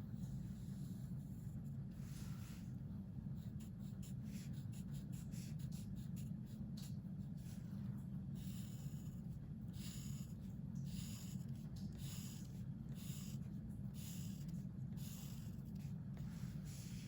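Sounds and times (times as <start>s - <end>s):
steady low hum: 0.0s - 17.0s
pencil scratching on paper: 3.4s - 7.6s, 8.3s - 17.0s.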